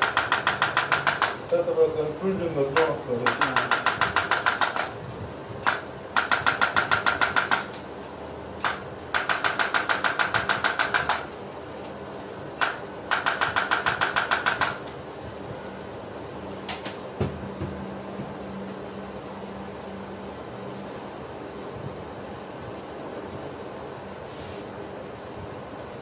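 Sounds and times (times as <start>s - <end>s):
adjusting gun rapid clicks: 0.0s - 1.4s, 3.2s - 5.0s, 5.6s - 7.8s, 8.6s - 11.3s, 12.6s - 14.9s.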